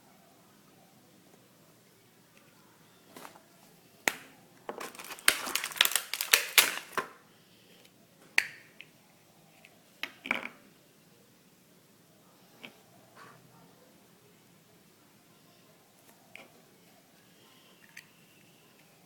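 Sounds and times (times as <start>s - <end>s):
plastic packaging crackling: 4.1s - 7.2s.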